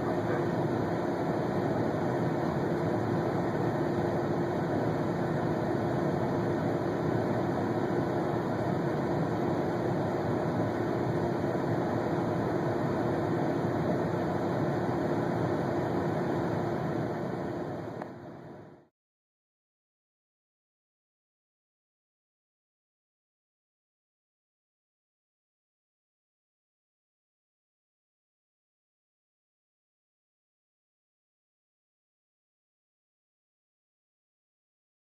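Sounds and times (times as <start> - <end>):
constant hum: 0.0 - 18.9
steady mechanical drone: 0.0 - 18.9.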